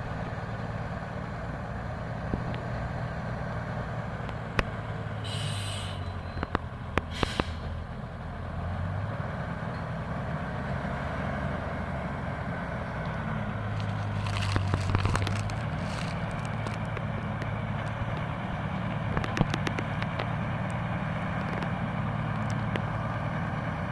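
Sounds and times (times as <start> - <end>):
truck engine running: 0.0 - 23.9
short bursts of hiss: 5.2 - 6.1, 7.1 - 7.8.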